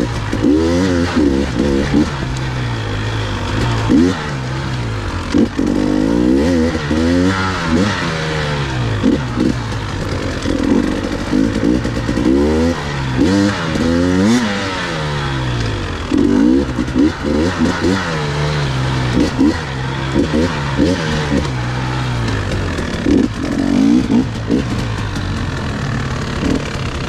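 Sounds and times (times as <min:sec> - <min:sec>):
motorcycle engine revving: 0:00.0 - 0:27.0.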